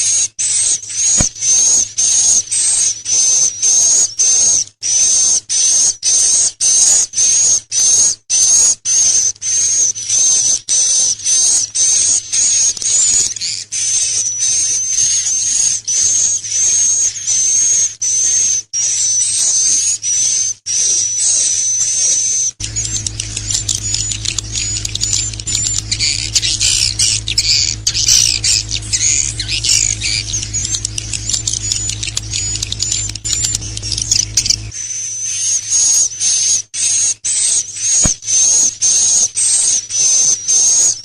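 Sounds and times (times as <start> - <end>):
high-pitched buzzy bird trills: 0.0 - 41.0
bird twittering: 11.3 - 41.0
low steady hum: 22.6 - 34.7.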